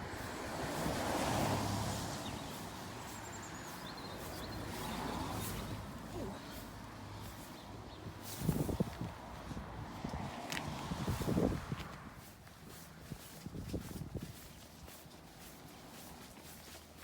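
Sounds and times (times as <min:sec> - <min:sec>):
wind and rain outdoors: 0:00.0 - 0:02.3.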